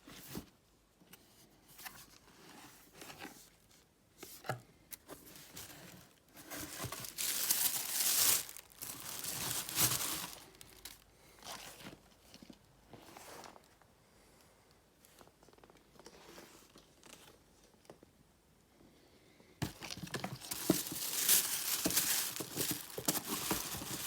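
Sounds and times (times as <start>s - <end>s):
rustling: 5.1s - 13.8s, 19.6s - 24.0s
paper crinkling and tearing: 6.5s - 11.0s, 19.9s - 24.0s.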